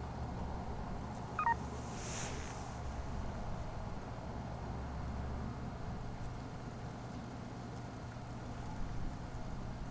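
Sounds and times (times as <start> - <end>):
low outdoor rumble: 0.0 - 9.9.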